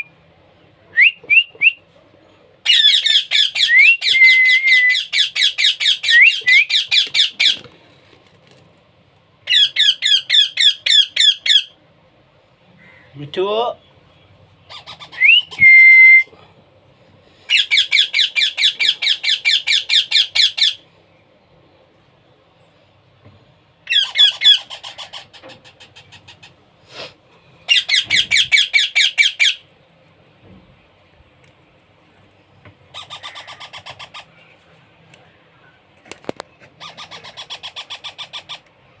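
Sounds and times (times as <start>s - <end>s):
baby parrot squawking: 2.7s - 3.7s, 4.9s - 7.6s, 9.5s - 11.8s, 14.7s - 15.6s, 17.5s - 20.8s, 23.9s - 26.6s, 27.7s - 29.6s, 32.9s - 34.3s, 36.8s - 38.7s.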